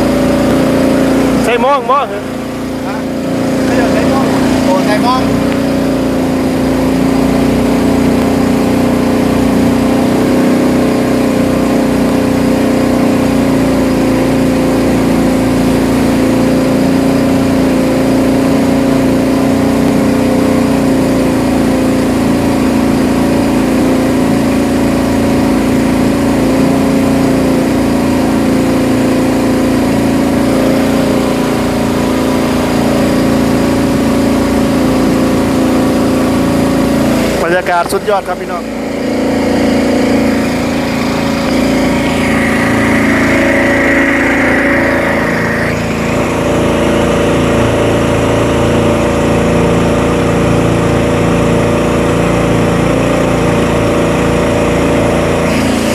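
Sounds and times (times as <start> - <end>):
boat engine droning: 0.0 - 55.9.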